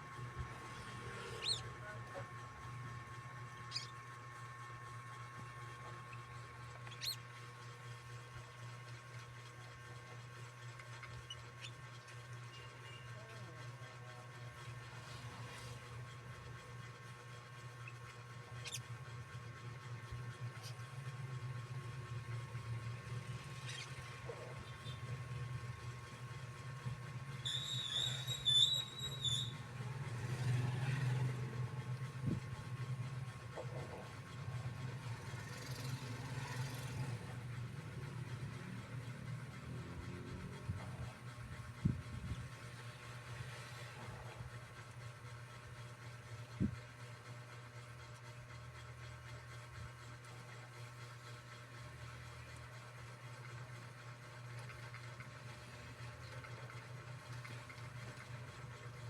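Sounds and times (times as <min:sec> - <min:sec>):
steady low hum: 0:00.0 - 0:59.0
high thin whistling tone: 0:27.4 - 0:29.6
short high squeak: 0:27.4 - 0:29.6.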